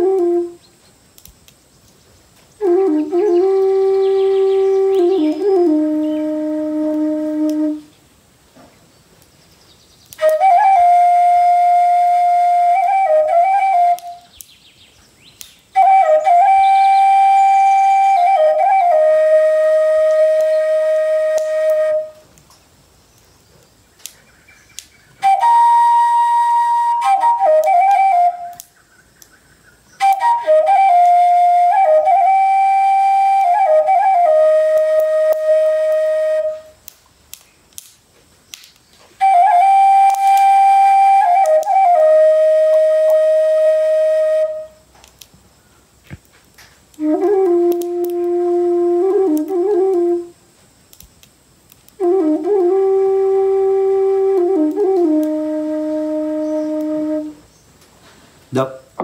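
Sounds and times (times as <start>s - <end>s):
flute playing slow melody: 0.0s - 0.8s, 2.5s - 8.0s, 10.1s - 14.5s, 15.7s - 22.4s, 25.0s - 29.0s, 29.9s - 37.0s, 39.2s - 45.2s, 46.9s - 50.6s, 51.9s - 57.7s.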